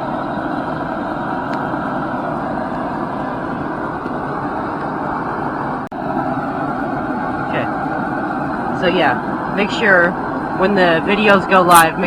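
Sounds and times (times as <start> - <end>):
forge roaring: 0.0 - 12.0.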